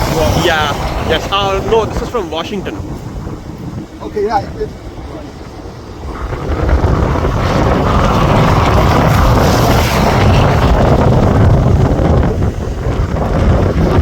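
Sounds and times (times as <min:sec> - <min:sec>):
jet engine rush: 0:00.0 - 0:14.0
wind buffeting microphone: 0:00.0 - 0:14.0.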